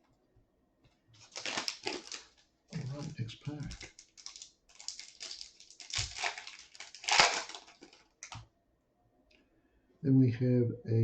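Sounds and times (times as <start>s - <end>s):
wrapper crinkling and tearing: 1.2s - 8.4s.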